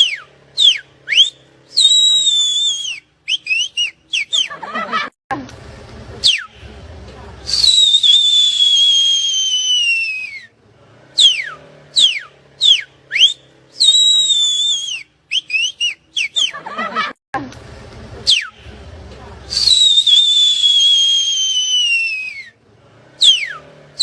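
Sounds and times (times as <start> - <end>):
high shrill whistling: 0.0 - 4.5, 7.5 - 10.5, 11.2 - 16.6, 19.5 - 22.6, 23.2 - 23.6.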